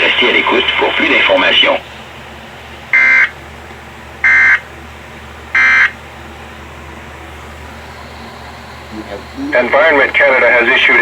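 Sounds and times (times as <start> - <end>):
static hiss: 0.0 - 3.3, 7.0 - 11.0
high electronic beeps: 3.0 - 3.3, 4.2 - 4.6, 5.6 - 5.9.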